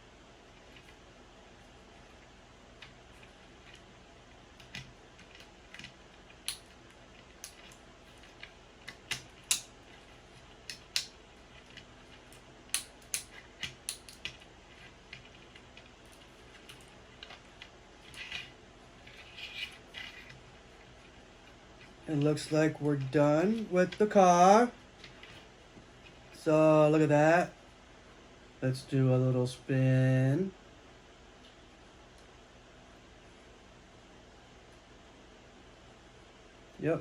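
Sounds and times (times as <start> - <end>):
wooden pieces clicking and tapping: 4.5 - 24.2.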